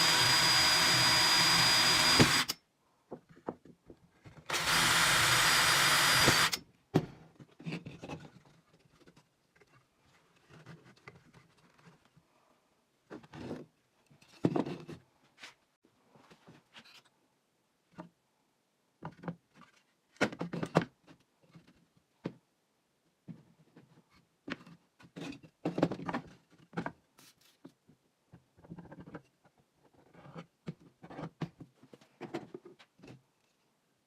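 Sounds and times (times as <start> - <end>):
parts and tools being handled: 0.2 - 12.2, 13.0 - 17.2, 19.0 - 22.4.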